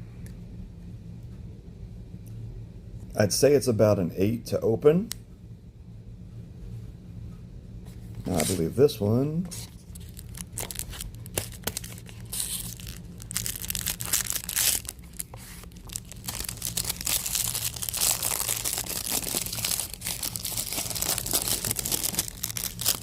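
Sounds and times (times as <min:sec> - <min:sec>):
packaging crinkling and tearing: 0:09.6 - 0:23.0.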